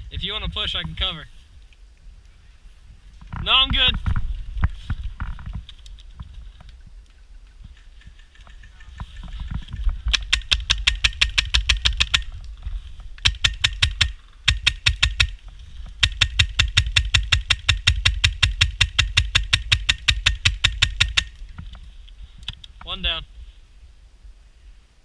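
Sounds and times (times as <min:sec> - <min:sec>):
airsoft gun automatic fire: 0:10.1 - 0:12.3, 0:13.2 - 0:15.4, 0:16.0 - 0:21.4.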